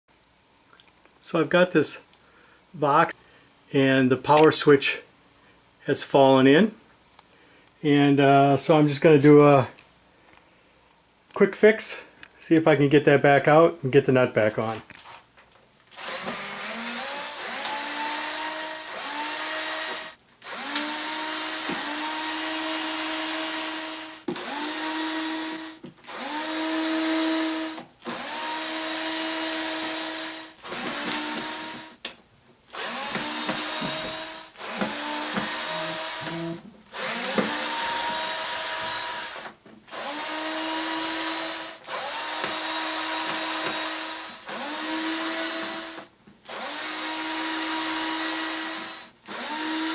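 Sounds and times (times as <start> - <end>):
power drill whining: 15.9 - 32.0, 32.7 - 49.9.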